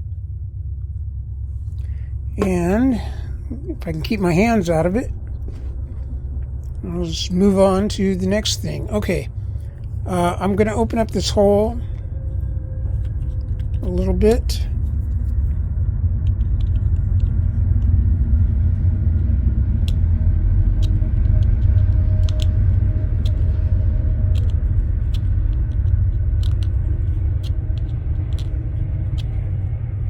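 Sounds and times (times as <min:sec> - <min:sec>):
steady low rumble: 0:00.0 - 0:30.0
small clicks and scrapes on plastic: 0:24.3 - 0:29.4.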